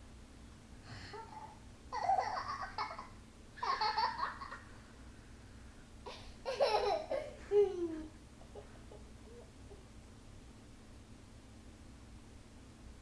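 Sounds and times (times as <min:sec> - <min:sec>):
child laughing and babbling: 0:06.1 - 0:09.5.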